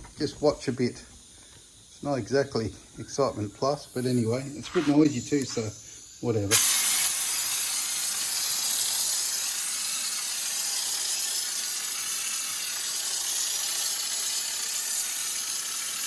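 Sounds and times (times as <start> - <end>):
spray hissing: 0.0 - 16.0.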